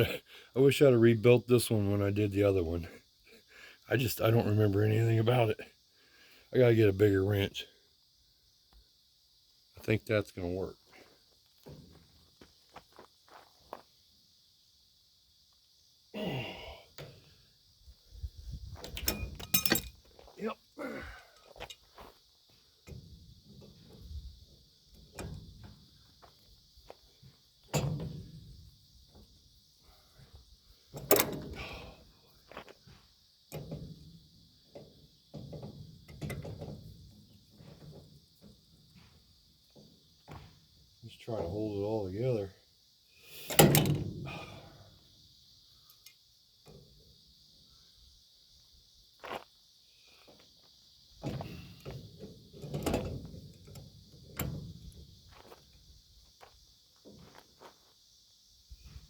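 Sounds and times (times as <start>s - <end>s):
metal tools clanking: 18.8s - 20.1s.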